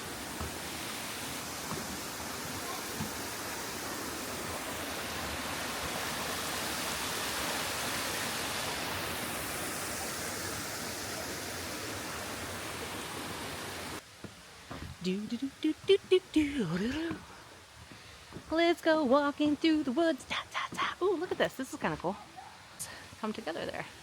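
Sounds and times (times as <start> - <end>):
small waterfall rushing: 0.0 - 14.9.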